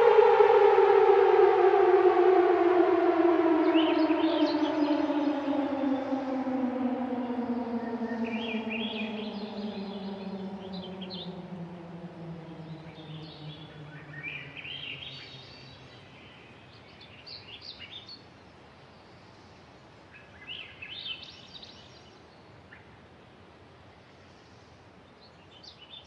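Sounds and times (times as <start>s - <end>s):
low droning tone sliding down: 0.0s - 15.4s
birds chirping: 3.4s - 16.0s.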